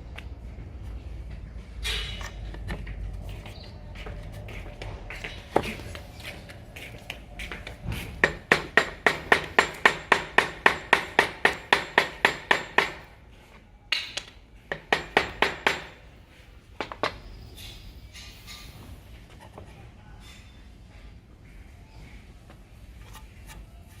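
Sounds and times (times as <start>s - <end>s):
hammer tapping on wood: 7.4s - 13.0s, 14.0s - 16.0s.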